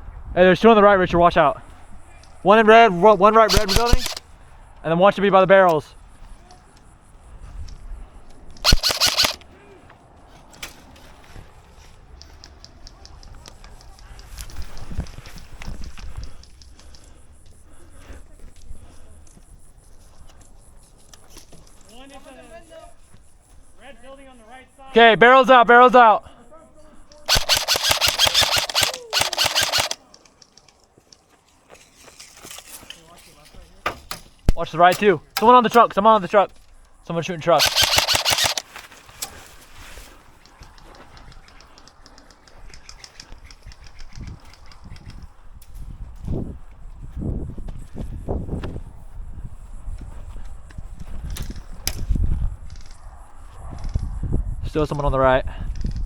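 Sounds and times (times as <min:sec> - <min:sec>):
airsoft gun shots: 0:03.5 - 0:04.2, 0:08.6 - 0:09.4, 0:27.3 - 0:30.0, 0:37.6 - 0:38.6
faint distant airsoft fire clicks: 0:07.6 - 0:09.5, 0:12.1 - 0:17.6, 0:27.1 - 0:31.3, 0:37.6 - 0:38.6, 0:40.4 - 0:45.2.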